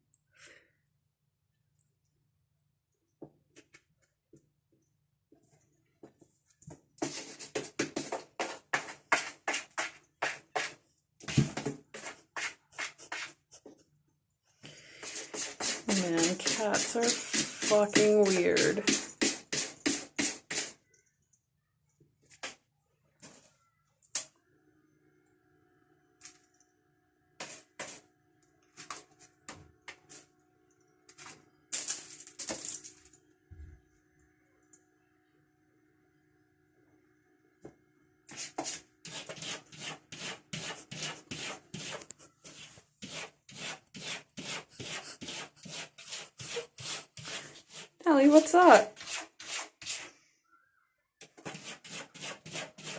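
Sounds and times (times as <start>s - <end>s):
cat scratching with paws: 7.0s - 13.8s, 14.9s - 20.8s, 27.4s - 28.0s, 38.3s - 50.1s, 51.2s - 52.9s.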